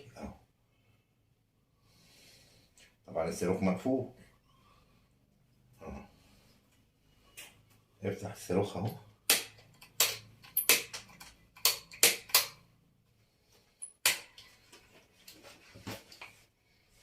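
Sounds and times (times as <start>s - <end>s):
sharp clicks and knocks: 9.3s - 12.6s.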